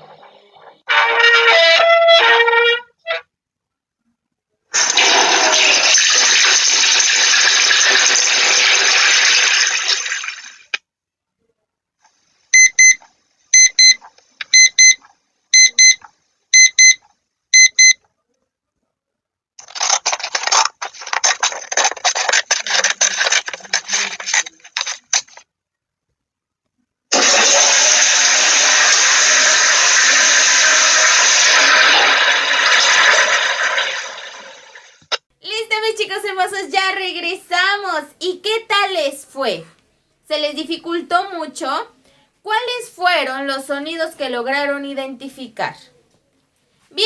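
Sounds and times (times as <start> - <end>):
electronic alarm beeping: 12.6 - 16.0, 16.6 - 17.0, 17.6 - 18.0.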